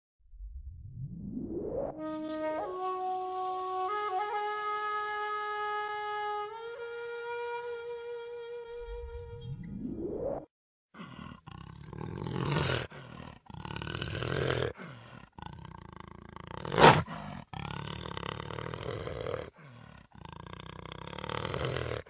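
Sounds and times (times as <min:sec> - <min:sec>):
jaguar growling: 0:11.0 - 0:22.0
jaguar snarl: 0:11.0 - 0:22.0.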